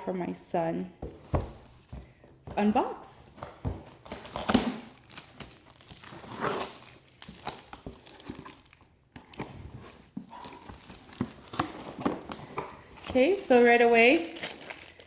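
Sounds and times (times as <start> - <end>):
packaging crinkling and rustling: 3.4 - 15.0.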